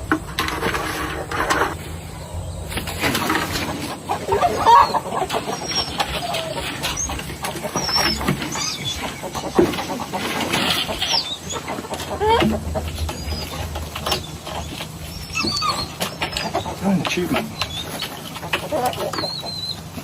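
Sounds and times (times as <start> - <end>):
chickens clucking and squawking: 0.0 - 20.0
wings flapping and scuffling: 2.6 - 20.0.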